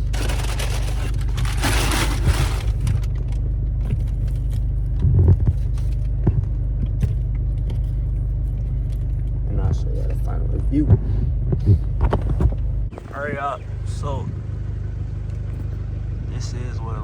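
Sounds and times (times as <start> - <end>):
rustling handling noise: 0.0 - 13.2
car idling inside cabin: 0.0 - 17.0.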